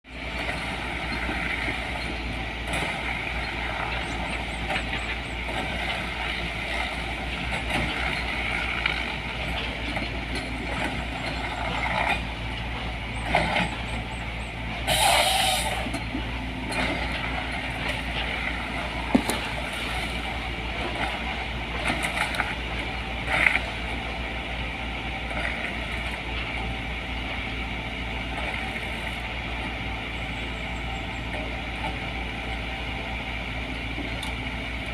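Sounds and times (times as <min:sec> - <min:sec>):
excavator diesel engine running: 0:00.0 - 0:34.9
loud hiss: 0:14.9 - 0:15.9.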